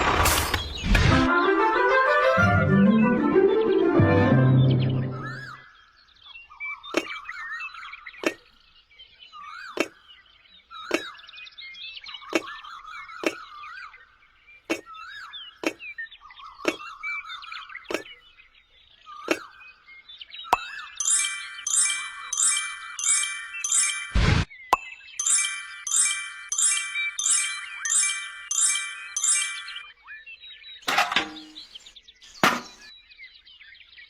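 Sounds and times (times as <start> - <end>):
chirping calls swooping in pitch: 20.6 - 24.2, 24.8 - 29.8.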